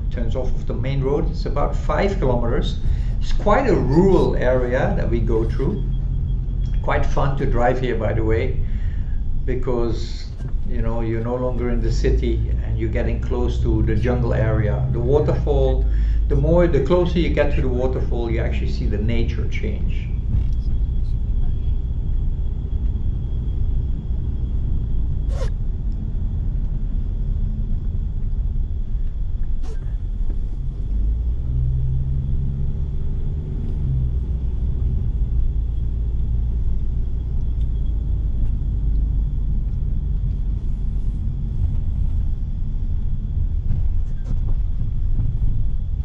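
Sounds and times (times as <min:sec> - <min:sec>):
car engine and tyre rumble: 0:00.0 - 0:46.0.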